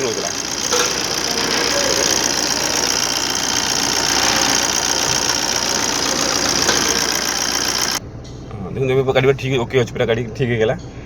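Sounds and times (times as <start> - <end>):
diesel engine idling: 0.0 - 8.0.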